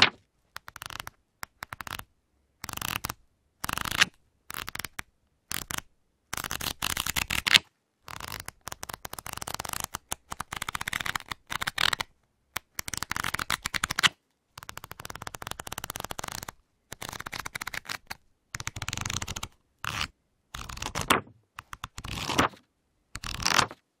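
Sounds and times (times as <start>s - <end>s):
book pages flicked through: 0.0s - 0.2s, 20.6s - 22.6s, 23.2s - 23.8s
pages flapping: 0.0s - 5.8s, 6.4s - 22.6s, 23.2s - 23.8s.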